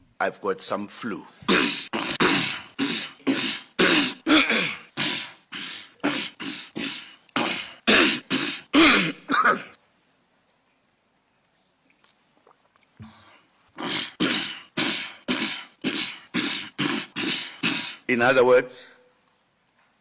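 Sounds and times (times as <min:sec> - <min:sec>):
man coughing: 0:01.4 - 0:09.8, 0:13.8 - 0:18.1.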